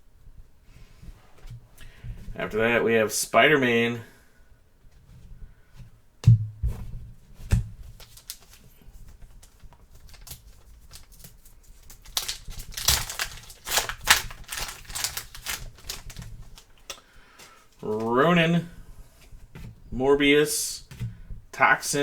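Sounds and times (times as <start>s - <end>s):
cards scraping and rustling: 7.9s - 18.1s.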